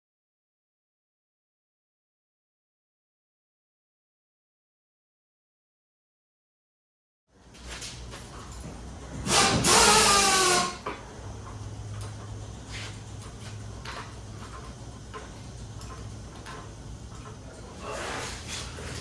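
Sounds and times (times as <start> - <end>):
power drill whining: 9.2 - 10.9.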